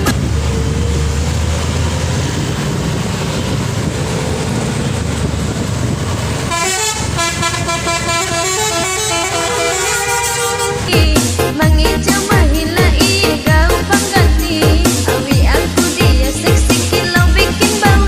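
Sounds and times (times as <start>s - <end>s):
truck engine rumbling: 0.0s - 18.0s
truck horn playing a tune: 6.4s - 12.0s.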